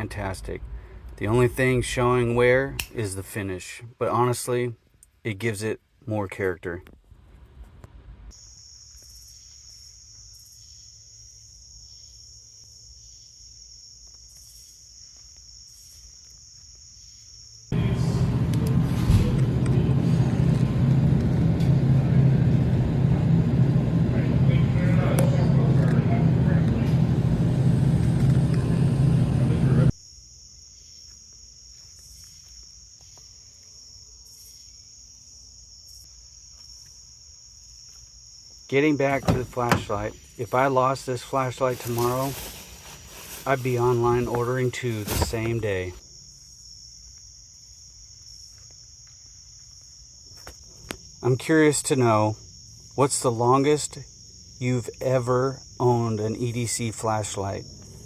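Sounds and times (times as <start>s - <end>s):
faint low rumble: 0.0s - 3.0s, 6.9s - 8.3s, 17.8s - 30.0s
insect chorus trilling: 8.3s - 17.8s, 30.0s - 58.0s
crickets chirring: 8.3s - 18.6s, 28.0s - 58.0s.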